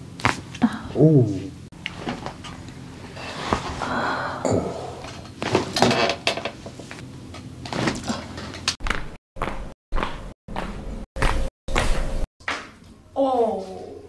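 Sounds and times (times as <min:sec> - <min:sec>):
rustling and shuffling: 0:01.4 - 0:03.9, 0:05.1 - 0:07.1.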